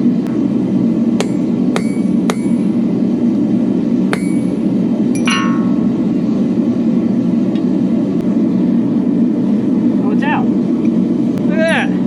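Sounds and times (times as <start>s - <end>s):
steady low drone: 0.0s - 10.0s
hammer striking steel on anvil: 1.2s - 3.1s, 4.1s - 6.4s.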